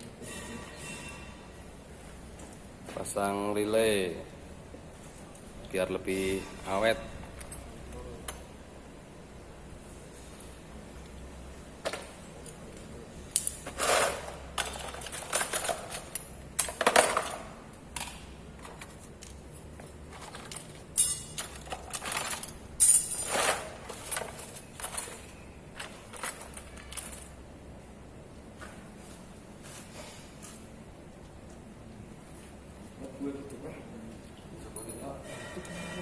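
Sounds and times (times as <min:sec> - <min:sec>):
parts and wiring being handled: 0:10.1 - 0:36.0.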